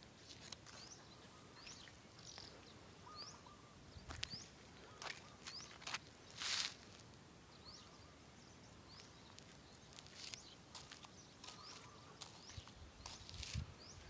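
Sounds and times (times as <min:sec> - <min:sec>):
small birds chirping: 0:00.1 - 0:14.0.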